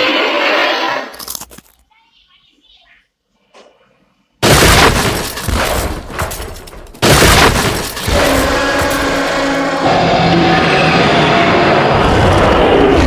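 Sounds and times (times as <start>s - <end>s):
loud shattering crashing booms: 4.4s - 9.7s.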